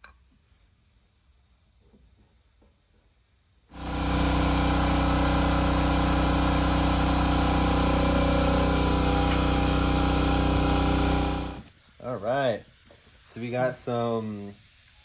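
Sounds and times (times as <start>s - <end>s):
motor running with loud hum: 3.7s - 11.6s.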